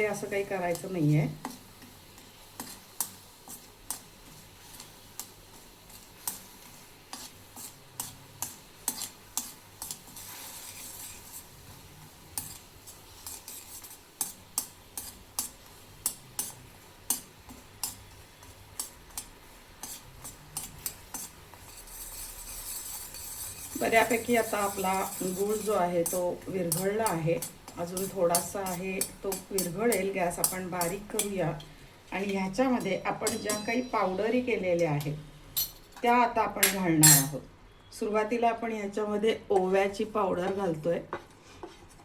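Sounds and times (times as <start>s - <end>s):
faint sizzle: 0.0s - 42.0s
spoon clinking against pan: 33.2s - 34.2s, 36.6s - 37.4s.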